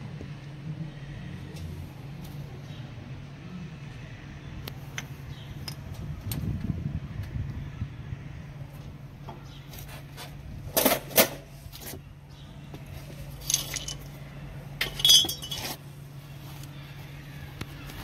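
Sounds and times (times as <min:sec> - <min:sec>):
steady low hum: 0:00.0 - 0:18.0
metal clanks and rattles: 0:13.4 - 0:14.2, 0:14.8 - 0:15.8.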